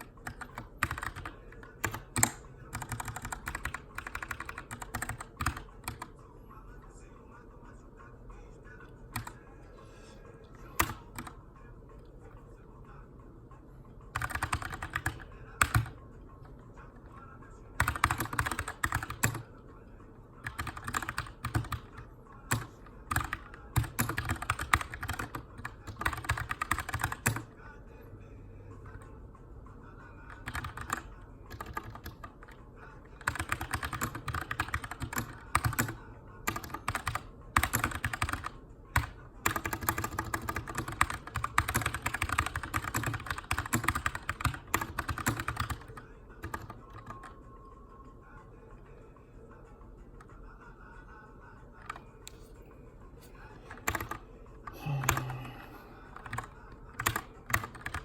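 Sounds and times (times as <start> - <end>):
mechanical keyboard typing: 0.0 - 6.1, 9.2 - 9.4, 10.8 - 11.4, 14.1 - 16.0, 17.8 - 19.5, 20.4 - 27.5, 30.3 - 32.6, 33.2 - 47.4, 53.7 - 54.2, 56.1 - 58.0.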